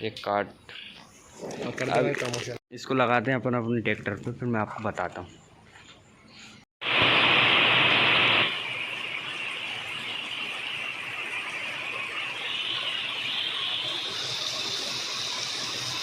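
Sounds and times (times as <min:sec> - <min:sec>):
falling water hissing: 0:06.8 - 0:16.0.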